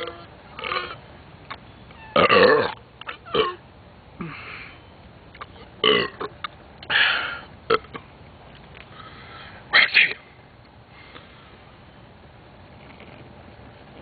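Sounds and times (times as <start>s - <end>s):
person burping: 2.2s - 2.8s, 5.8s - 6.3s.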